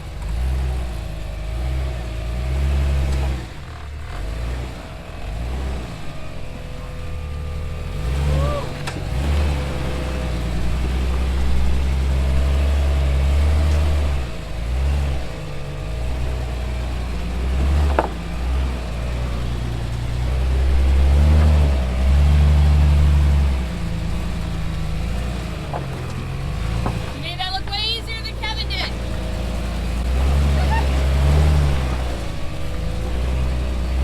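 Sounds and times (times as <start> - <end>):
off-road engine running: 0.0 - 34.0
rock knocking vehicle: 8.1 - 34.0.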